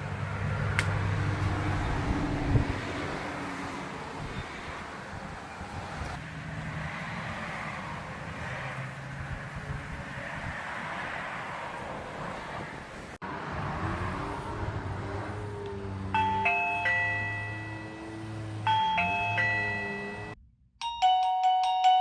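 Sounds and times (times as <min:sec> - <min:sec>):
electronic doorbell chime: 0:16.2 - 0:18.1, 0:18.7 - 0:22.0.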